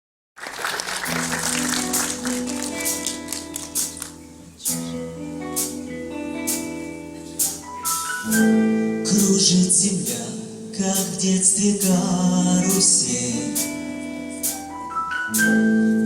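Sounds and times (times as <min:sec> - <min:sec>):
orchestra playing pop-jazz: 0:00.8 - 0:04.8, 0:06.4 - 0:12.1, 0:14.4 - 0:16.0.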